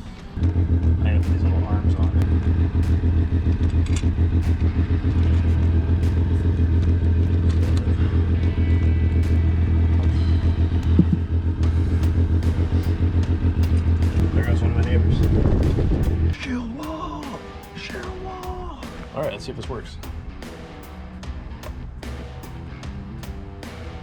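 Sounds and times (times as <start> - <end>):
vehicle engine rumbling: 0.0 - 16.9.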